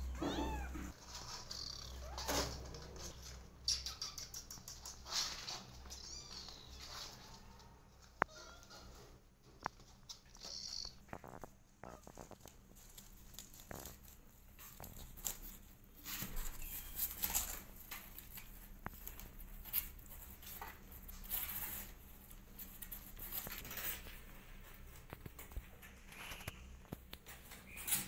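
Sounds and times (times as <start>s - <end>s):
kittens scrabbling and rustling: 0.0s - 28.0s.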